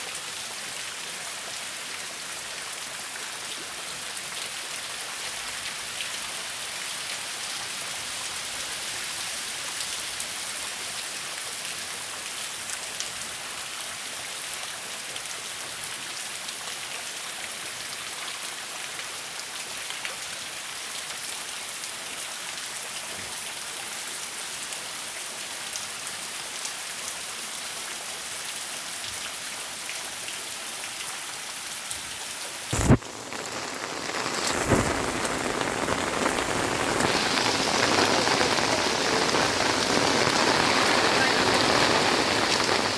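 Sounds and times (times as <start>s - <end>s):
heavy rain falling: 32.5s - 42.9s.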